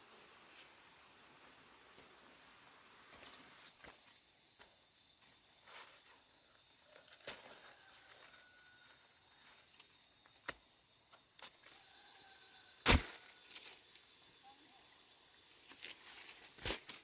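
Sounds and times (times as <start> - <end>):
steady high hiss: 0.0 - 7.0.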